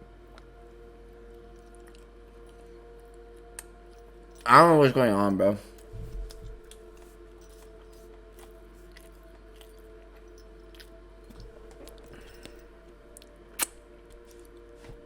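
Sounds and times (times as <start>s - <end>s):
faint steady drone: 0.0s - 15.0s
person chewing food: 1.2s - 2.6s, 5.7s - 15.0s.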